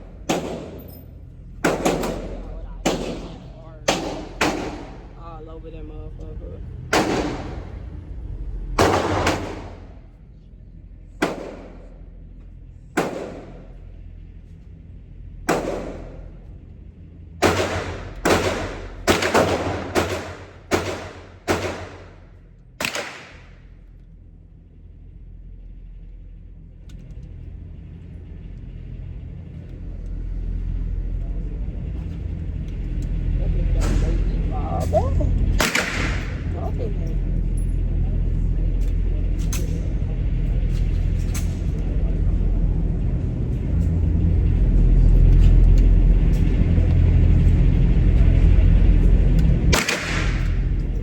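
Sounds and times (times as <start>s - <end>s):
low rumble: 0.0s - 51.0s
pistol gunshots: 0.2s - 0.9s, 1.6s - 5.1s, 6.9s - 7.8s, 8.8s - 9.9s, 11.2s - 11.8s, 13.0s - 13.6s, 15.5s - 16.2s, 17.4s - 22.2s, 22.8s - 23.6s, 35.6s - 36.5s, 49.7s - 50.7s.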